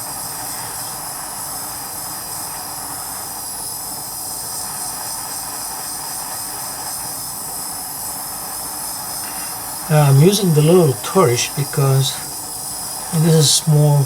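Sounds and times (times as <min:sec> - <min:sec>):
soldering torch flame hissing: 0:01.0 - 0:09.7.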